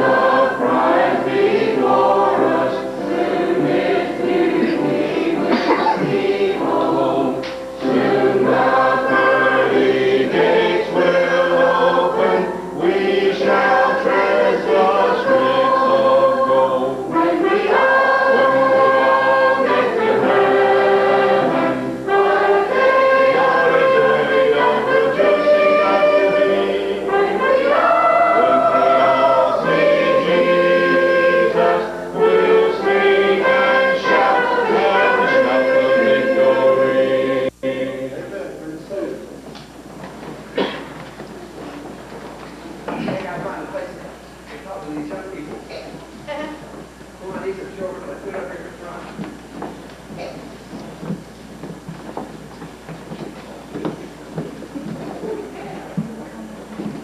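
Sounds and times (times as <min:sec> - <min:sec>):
choir singing gospel: 0:00.0 - 0:39.4.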